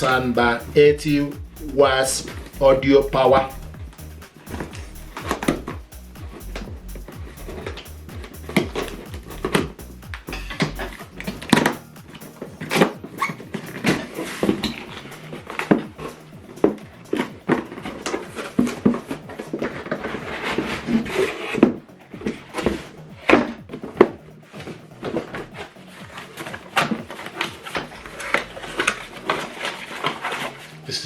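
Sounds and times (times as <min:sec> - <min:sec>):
paper and plastic rustling: 0:24.6 - 0:31.0.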